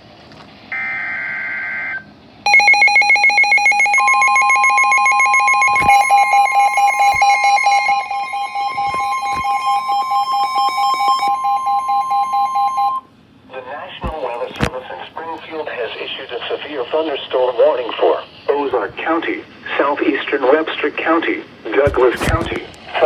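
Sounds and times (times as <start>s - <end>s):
steady high tone: 2.5s - 13.1s
screechy digital data burst: 4.8s - 12.8s
pulsing buzzy alert tone: 5.1s - 13.0s.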